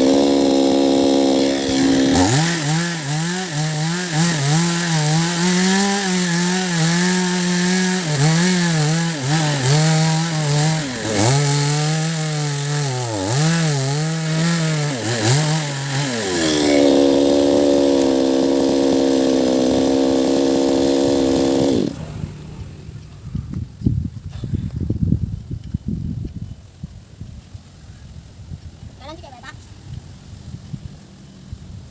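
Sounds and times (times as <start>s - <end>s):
chainsaw cutting wood: 0.0s - 23.2s.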